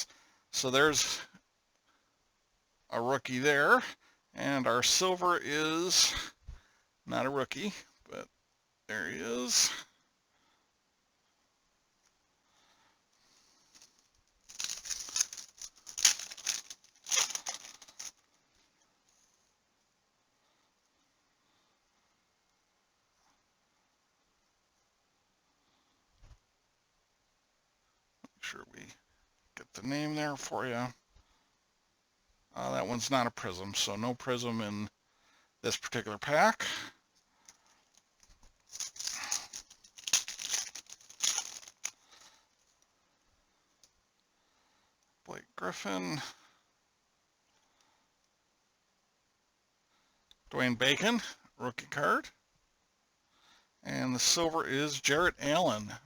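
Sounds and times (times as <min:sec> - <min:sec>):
cellophane wrapper crinkling: 0:13.7 - 0:18.2, 0:37.5 - 0:42.3.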